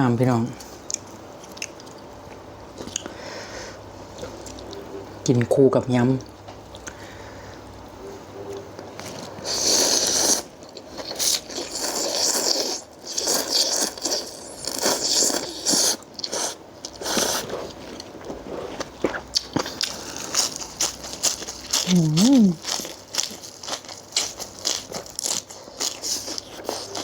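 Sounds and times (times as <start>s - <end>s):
person chewing and crunching: 0.6s - 3.2s, 8.8s - 27.0s.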